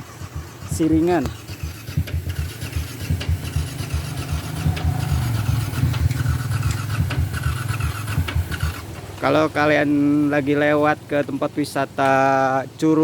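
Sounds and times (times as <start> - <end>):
motorcycle engine idling unevenly: 0.0 - 11.8.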